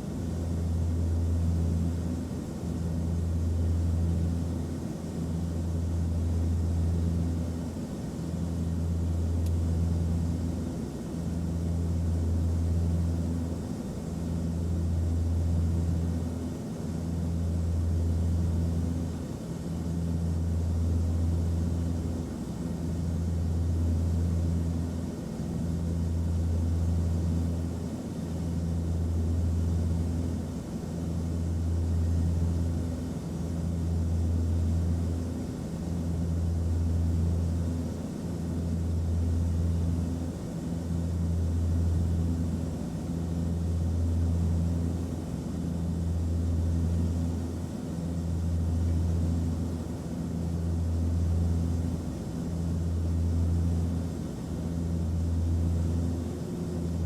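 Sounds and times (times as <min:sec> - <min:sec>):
airplane engine drone: 0:00.0 - 0:57.0.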